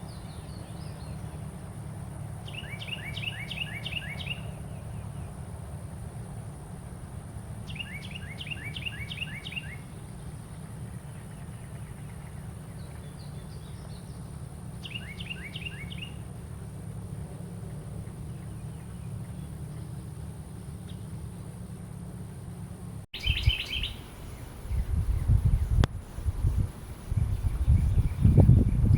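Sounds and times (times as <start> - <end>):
wren singing: 0.0 - 5.4, 7.6 - 16.3, 23.2 - 25.8, 26.9 - 28.9
steady low rumble: 0.0 - 28.9.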